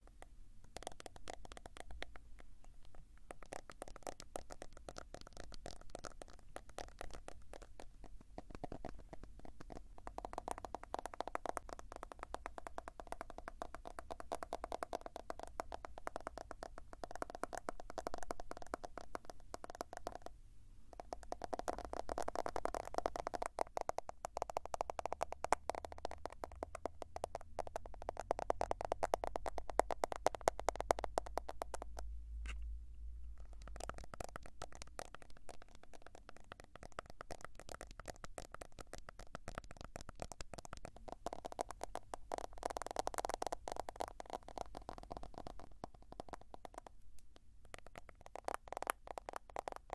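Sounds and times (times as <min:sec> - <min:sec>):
fingertips tapping on smartphone: 0:32.5 - 0:32.7.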